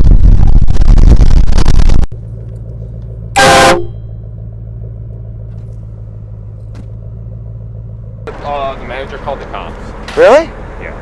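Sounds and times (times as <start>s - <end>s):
low engine hum: 0.0s - 11.0s
multi-tone horn blast: 3.4s - 4.1s
train horn blaring: 3.4s - 4.1s.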